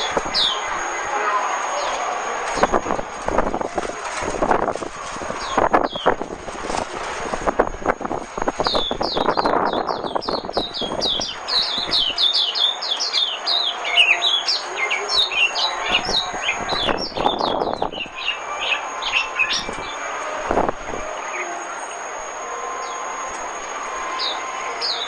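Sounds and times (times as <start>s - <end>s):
bird twittering song: 0.0s - 0.9s, 5.3s - 6.2s, 7.9s - 20.1s, 24.0s - 25.0s.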